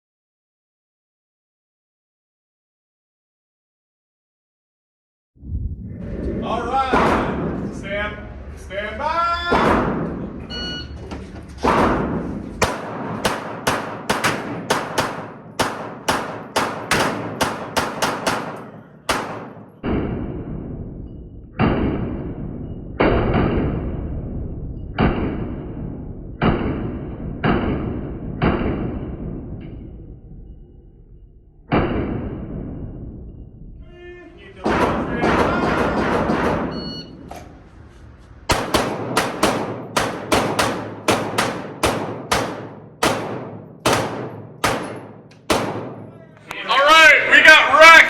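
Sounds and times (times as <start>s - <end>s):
pistol shots echoing: 9.5s - 10.3s, 11.6s - 19.9s, 34.6s - 37.2s, 38.5s - 46.4s.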